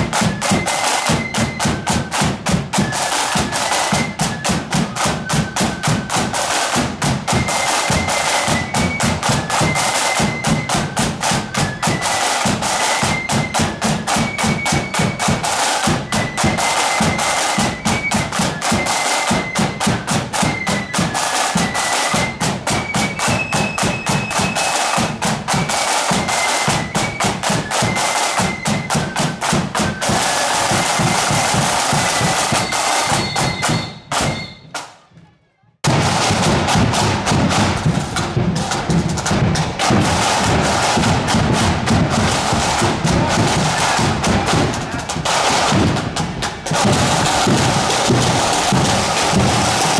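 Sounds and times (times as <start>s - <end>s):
flutes playing melody: 0.0s - 34.8s
snare drum rolls: 0.0s - 35.2s, 35.8s - 49.9s
bass drum beat: 35.8s - 49.9s.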